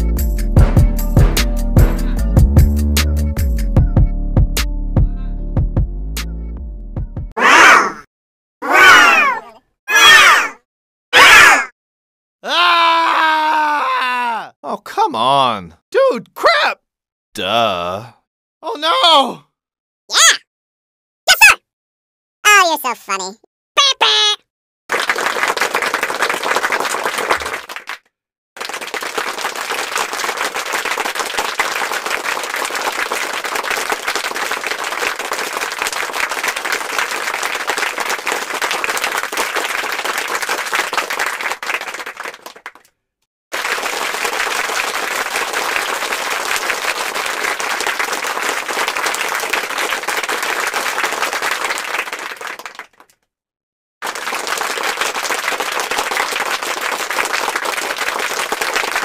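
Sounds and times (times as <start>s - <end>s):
crowd clapping: 24.9s - 42.9s, 43.5s - 53.2s, 54.0s - 59.0s.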